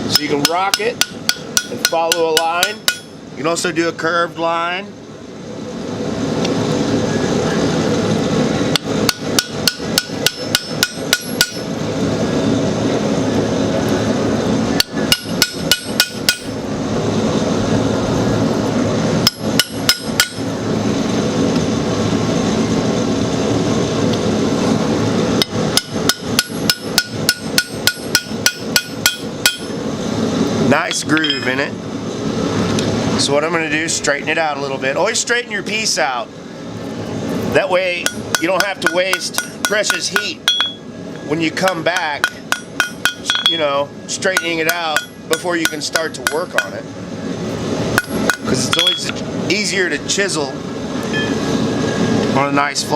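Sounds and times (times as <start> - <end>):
hammer striking chisel on metal: 0.1 - 3.1, 8.8 - 11.7, 14.8 - 16.5, 19.2 - 20.4, 25.4 - 29.7, 30.9 - 31.5, 38.0 - 40.8, 41.6 - 46.8, 48.0 - 49.2.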